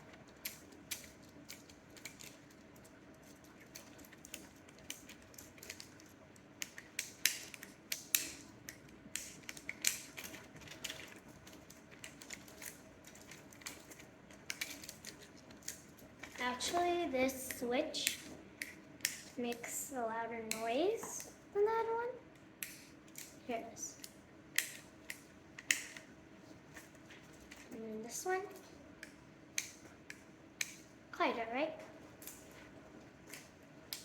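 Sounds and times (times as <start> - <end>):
fidget cube plastic clicks: 0.2 - 16.4, 24.0 - 26.1.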